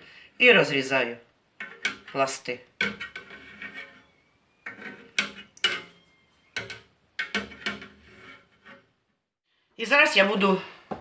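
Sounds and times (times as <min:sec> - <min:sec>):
metal cutter scraping metal pot: 0:01.6 - 0:08.9.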